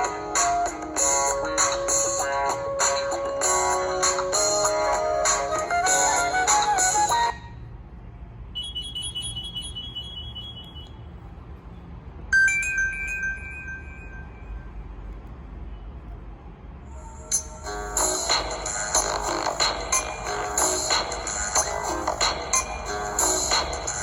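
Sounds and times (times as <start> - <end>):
electronic ringtone: 12.3 - 14.7, 17.3 - 24.0.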